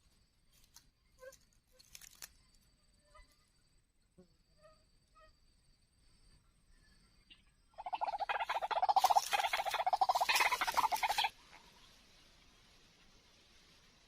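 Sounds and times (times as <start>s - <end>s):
waterhen harsh chattering call: 7.8s - 11.7s.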